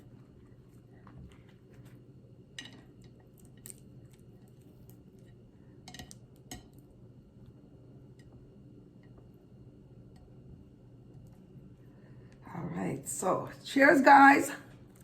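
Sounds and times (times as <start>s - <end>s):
soft squishy sandwich handling: 0.0s - 2.3s.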